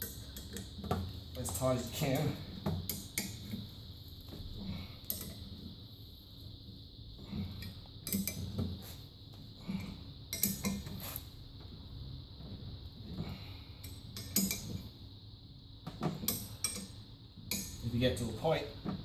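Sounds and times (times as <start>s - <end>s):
allen key clinking on metal bolts: 13.8s - 14.8s.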